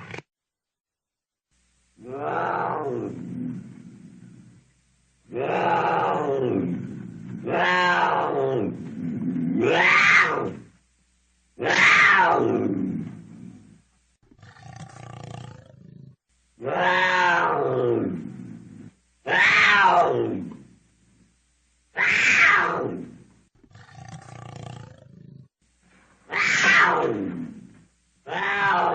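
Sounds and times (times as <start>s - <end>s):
rasping cougar call: 2.0s - 4.5s, 5.3s - 10.6s, 11.6s - 12.8s, 16.6s - 20.6s, 22.0s - 25.4s, 26.3s - 28.9s
cougar yowling: 7.4s - 8.8s, 9.6s - 10.6s, 11.6s - 12.7s, 16.6s - 18.2s, 19.3s - 20.6s, 22.0s - 23.0s, 26.3s - 27.4s, 28.3s - 28.9s.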